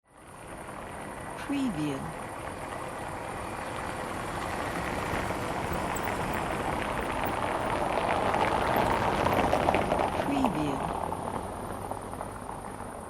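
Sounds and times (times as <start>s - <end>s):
car passing on asphalt: 0.1s - 1.4s, 2.1s - 13.0s.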